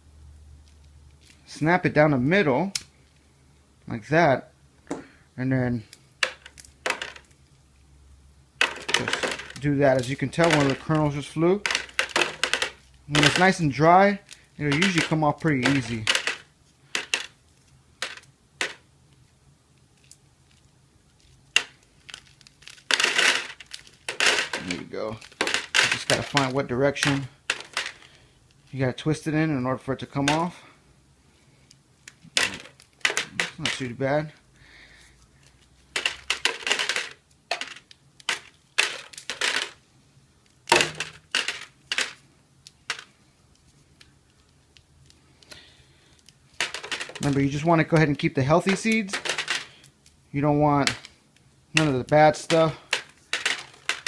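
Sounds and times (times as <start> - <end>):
corn kernels crackling: 8.6 - 29.2, 32.0 - 39.8, 40.4 - 43.2, 43.8 - 54.0.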